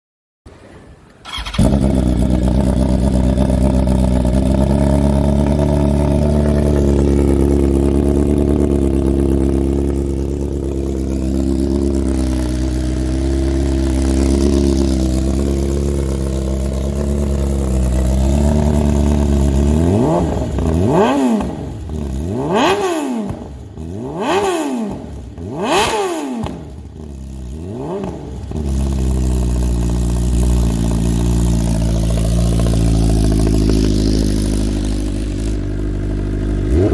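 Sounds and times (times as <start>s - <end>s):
motorcycle engine starting: 0.6s - 36.9s
motorcycle engine idling: 1.2s - 36.9s
motorcycle engine revving: 1.2s - 36.9s.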